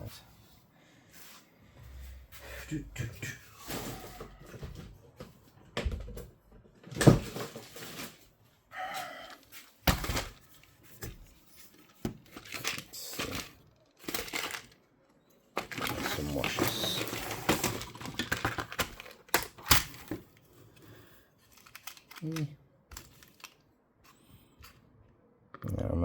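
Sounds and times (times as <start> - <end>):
rummaging through small parts: 6.7 - 8.5, 9.2 - 24.9.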